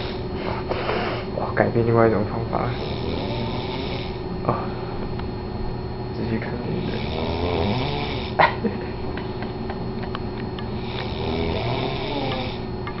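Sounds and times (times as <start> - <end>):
man snoring: 0.0 - 1.4, 2.6 - 4.7, 6.7 - 8.6, 10.8 - 12.7.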